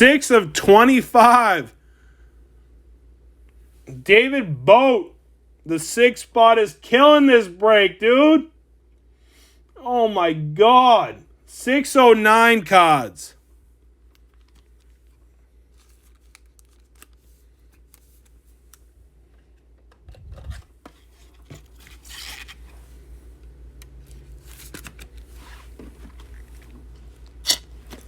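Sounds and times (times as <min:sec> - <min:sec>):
rustling plastic card sleeves: 0:14.0 - 0:28.0.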